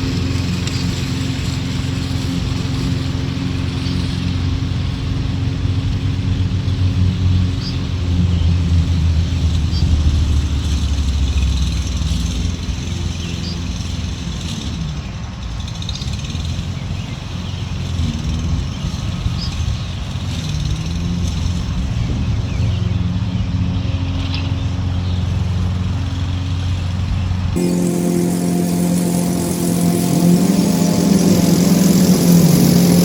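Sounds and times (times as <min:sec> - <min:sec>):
lawn mower engine running: 0:27.6 - 0:33.0.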